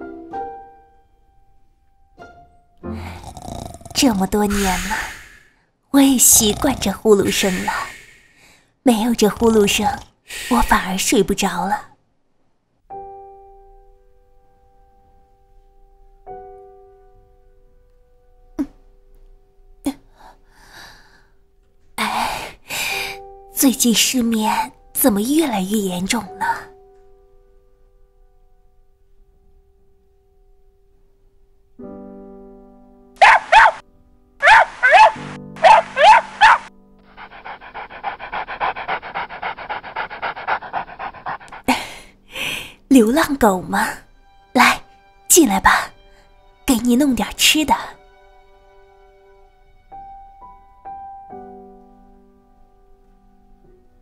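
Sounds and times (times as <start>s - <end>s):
dog panting rapidly: 33.2s - 33.8s, 34.4s - 42.1s
soft sustained music chords: 43.4s - 54.0s.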